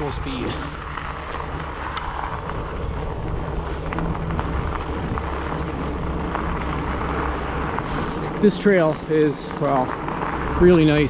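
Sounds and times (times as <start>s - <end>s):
bike tyres rolling on gravel: 0.0s - 11.0s.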